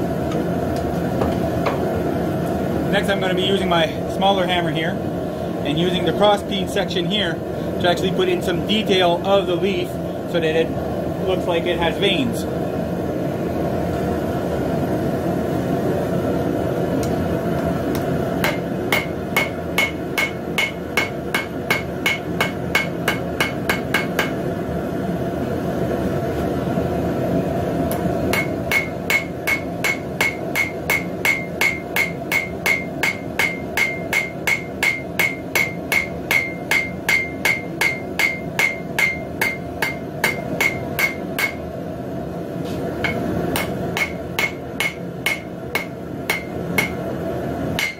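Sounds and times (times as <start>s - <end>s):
hammer striking hot steel on anvil: 17.9s - 24.4s, 27.9s - 41.6s, 43.0s - 47.1s.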